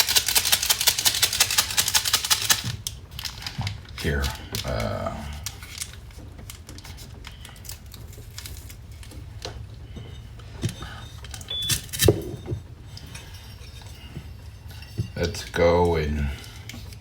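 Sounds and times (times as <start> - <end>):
low steady hum: 0.0 - 17.0
cups and utensils clinking: 9.2 - 17.0.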